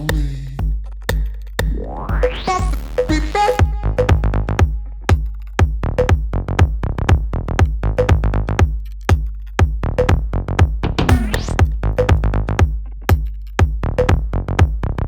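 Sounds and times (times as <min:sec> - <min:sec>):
drum-machine beat: 0:00.0 - 0:14.9
electronic dance-pop music: 0:01.1 - 0:06.7, 0:08.0 - 0:14.7
low bass line: 0:01.6 - 0:08.8, 0:09.6 - 0:15.0
rising synth sweep: 0:01.7 - 0:03.9.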